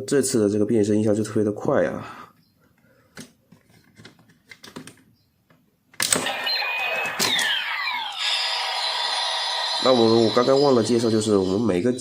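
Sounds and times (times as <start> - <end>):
toy electronic sound effect: 6.0 - 12.0.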